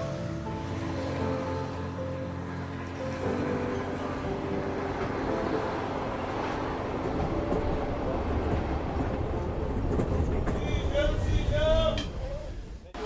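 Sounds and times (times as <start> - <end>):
train wheels rumbling on rails: 3.0 - 12.9.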